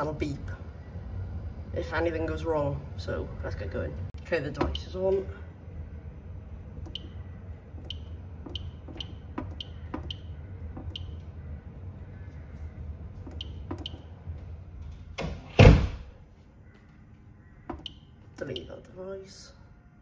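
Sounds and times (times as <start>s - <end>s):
low steady hum: 0.0s - 20.0s
keypad button clicks: 6.8s - 7.2s, 7.8s - 11.2s, 13.3s - 14.1s, 17.7s - 18.7s.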